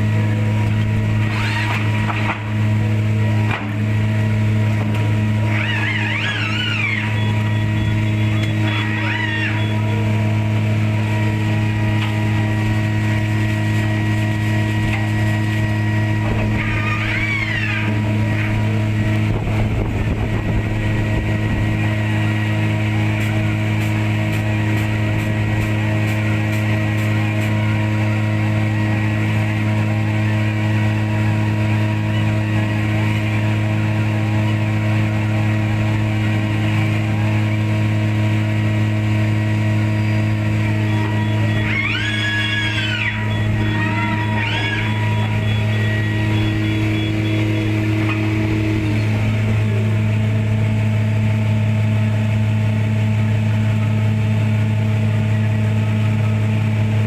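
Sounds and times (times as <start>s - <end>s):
low machine hum: 0.0s - 57.0s
short whining tones: 5.2s - 21.4s, 38.6s - 50.9s.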